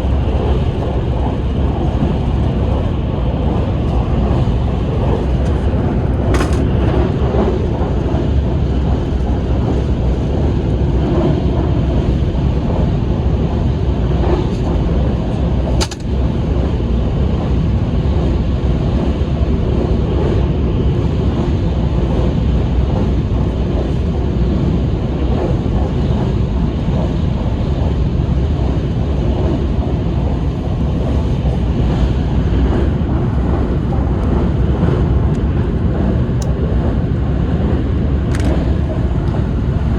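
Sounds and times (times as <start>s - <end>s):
train rumbling at speed: 0.0s - 39.9s
sharp click: 15.8s - 16.2s.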